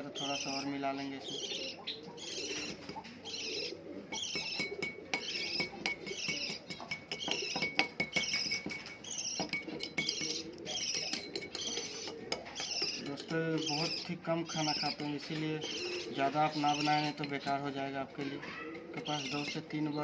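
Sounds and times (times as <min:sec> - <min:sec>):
budgie chirping: 0:00.0 - 0:20.0
spoon clinking against dish: 0:04.2 - 0:15.9, 0:16.5 - 0:17.8.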